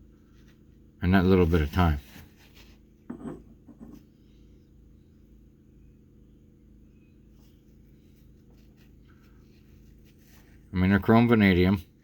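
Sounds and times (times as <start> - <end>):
faint low hum: 0.0 - 12.0.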